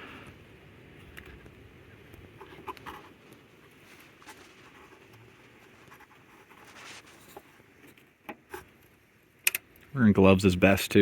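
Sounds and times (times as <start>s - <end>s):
light clicks and taps of tools: 7.4s - 9.9s.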